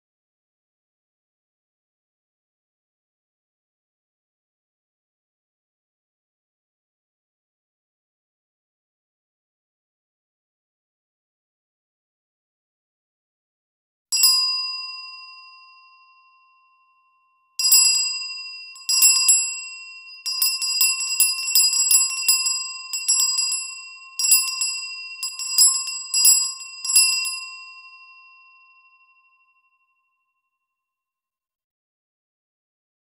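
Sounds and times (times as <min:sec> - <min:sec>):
bell ringing: 0:14.2 - 0:29.9.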